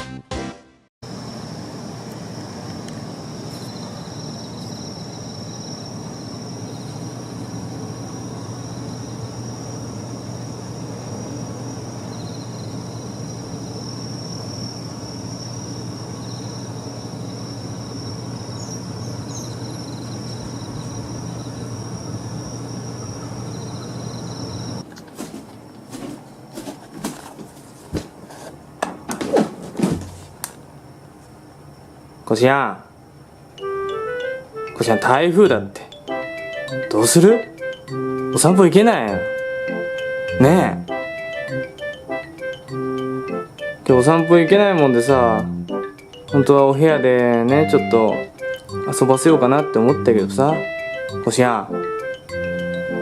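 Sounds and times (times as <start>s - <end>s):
machine hum with high whine: 1.0s - 24.8s.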